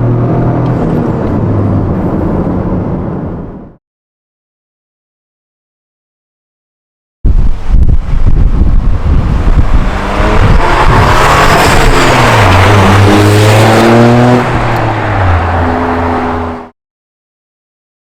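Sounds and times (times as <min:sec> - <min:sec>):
car engine accelerating: 0:08.8 - 0:16.7.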